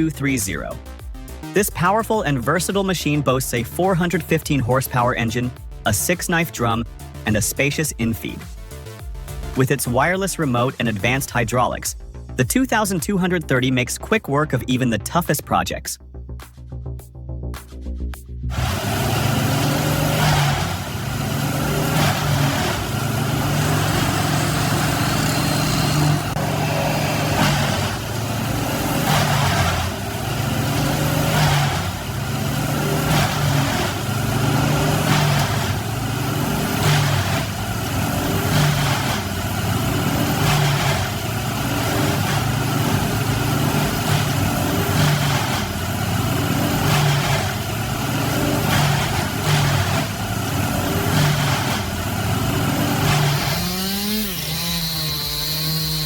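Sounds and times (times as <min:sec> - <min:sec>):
heavy engine surging: 0:18.5 - 0:56.0.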